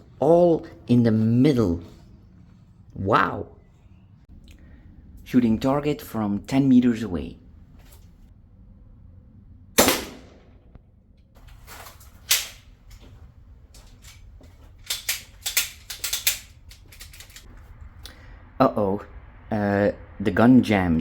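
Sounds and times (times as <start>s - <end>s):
airsoft pistol shots: 9.8s - 10.6s
fainter sharp cracks: 9.8s - 10.8s, 11.4s - 17.5s.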